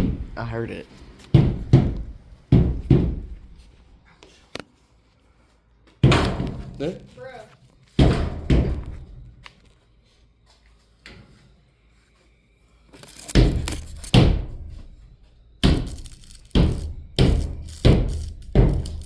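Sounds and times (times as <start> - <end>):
heavy thuds on wood: 1.3 - 3.5, 6.0 - 6.7, 8.0 - 9.0, 13.2 - 14.6, 15.6 - 19.0.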